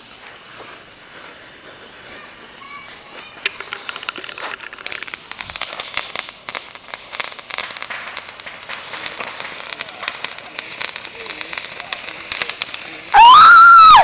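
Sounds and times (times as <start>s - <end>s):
firecrackers popping: 0.0s - 14.0s.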